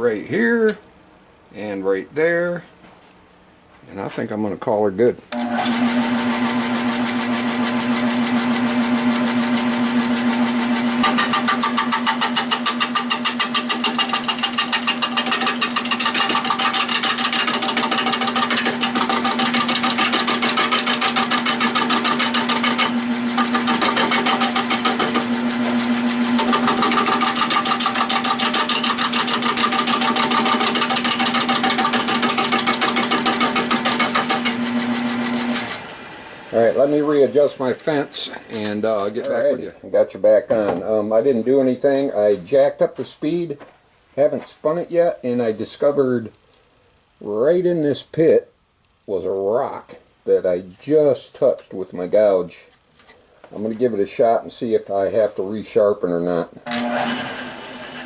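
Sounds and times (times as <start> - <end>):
lathe motor hum: 5.4 - 39.2, 56.7 - 58.0
gouge cutting wood pulsing: 5.4 - 39.4, 56.7 - 58.0.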